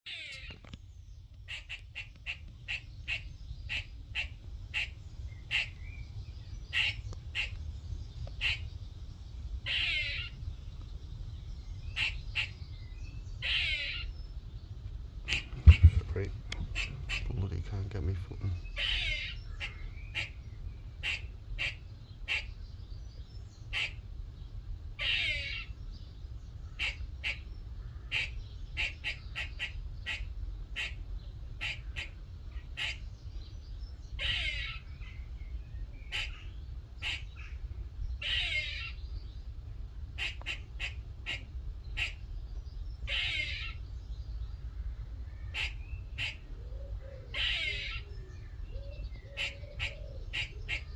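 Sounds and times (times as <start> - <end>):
squirrel rasping call: 0.1 - 0.6, 1.5 - 6.0, 6.7 - 7.6, 8.4 - 8.7, 9.6 - 10.4, 11.9 - 12.6, 13.4 - 14.2, 15.2 - 20.4, 21.0 - 22.6, 23.7 - 24.0, 25.0 - 25.8, 26.7 - 31.0, 31.6 - 33.1, 34.2 - 34.9, 36.1 - 37.6, 38.2 - 39.0, 40.2 - 42.2, 43.1 - 43.8, 45.5 - 48.2, 48.8 - 50.9
squirrel barking chucks: 1.5 - 5.8, 6.7 - 7.6, 8.4 - 8.7, 12.0 - 12.5, 15.2 - 20.4, 21.0 - 22.5, 23.7 - 24.0, 26.8 - 27.5, 28.1 - 31.0, 31.6 - 33.1, 37.0 - 37.3, 40.2 - 42.2, 45.5 - 46.5, 49.4 - 50.9.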